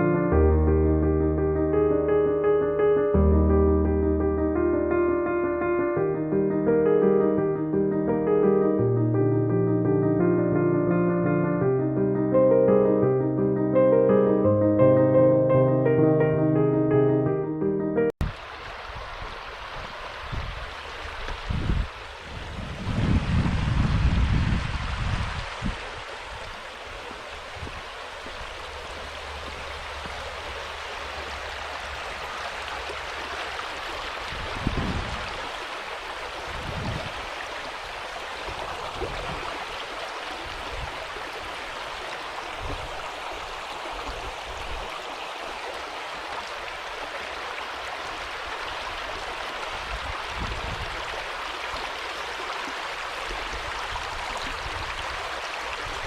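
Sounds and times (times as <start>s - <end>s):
flowing water rushing: 18.2s - 56.0s.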